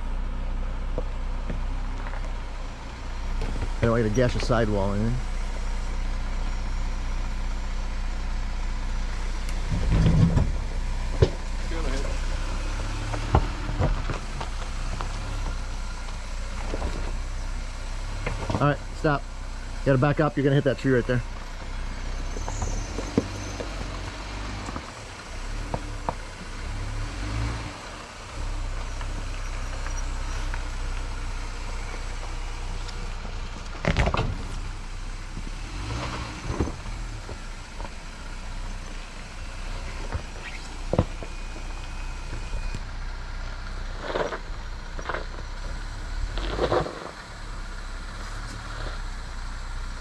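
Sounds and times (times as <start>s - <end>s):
car engine running low: 0.0s - 50.0s
sharp knocks and clunks: 13.1s - 15.0s, 18.2s - 18.7s.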